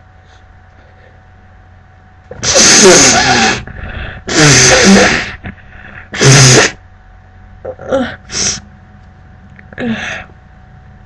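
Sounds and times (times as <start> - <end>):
woman sneezing: 2.4 - 3.6.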